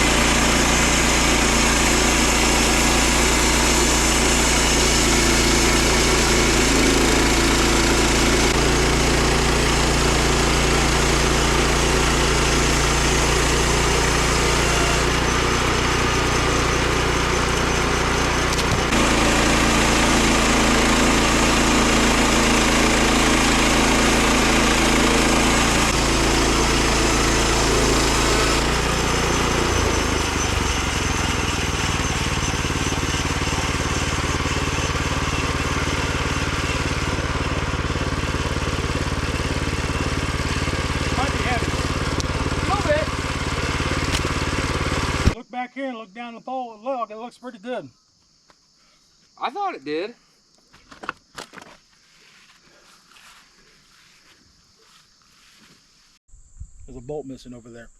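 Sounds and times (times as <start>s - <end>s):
small gasoline engine running: 0.0s - 45.4s.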